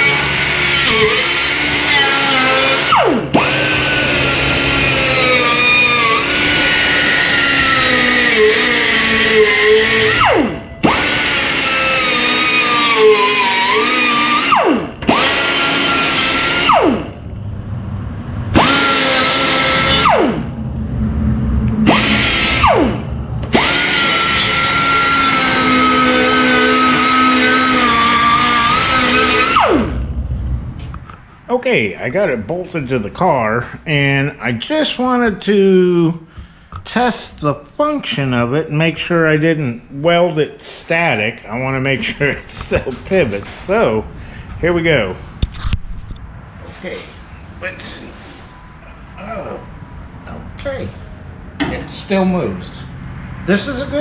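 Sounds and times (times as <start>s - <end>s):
power tool motor whining: 0.0s - 17.2s, 18.6s - 20.5s, 21.8s - 30.1s.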